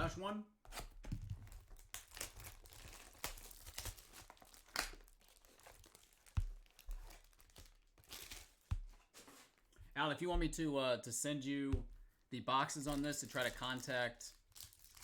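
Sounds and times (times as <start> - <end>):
foil wrapper tearing and crinkling: 0.8 - 8.8, 12.7 - 15.0.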